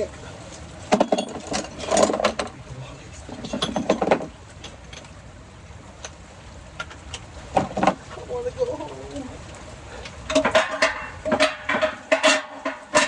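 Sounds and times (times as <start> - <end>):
rain hiss: 0.0 - 13.0
metal tools clanking: 3.4 - 5.1, 10.3 - 13.0.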